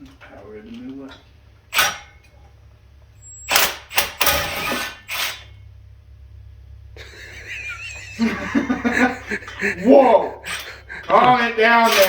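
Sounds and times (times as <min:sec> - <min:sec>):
impact wrench hammering: 0:01.7 - 0:02.3, 0:03.2 - 0:05.5.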